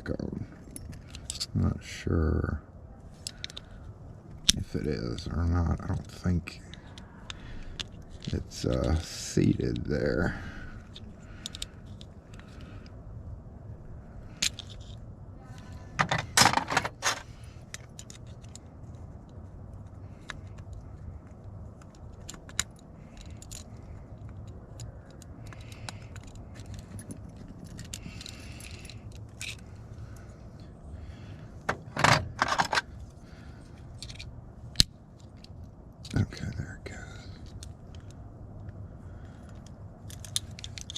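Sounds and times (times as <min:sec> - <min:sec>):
metal lock parts clicking: 0:00.6 - 0:01.5, 0:03.2 - 0:03.8, 0:04.4 - 0:09.9, 0:10.7 - 0:12.6, 0:14.3 - 0:15.0, 0:16.0 - 0:18.7, 0:21.8 - 0:29.8, 0:31.6 - 0:33.1, 0:33.8 - 0:36.3, 0:37.4 - 0:38.2, 0:39.3 - 0:40.9
metal parts rattling: 0:06.8 - 0:12.6, 0:14.3 - 0:15.0, 0:15.9 - 0:18.6, 0:21.8 - 0:30.3, 0:31.6 - 0:36.2, 0:39.3 - 0:40.9.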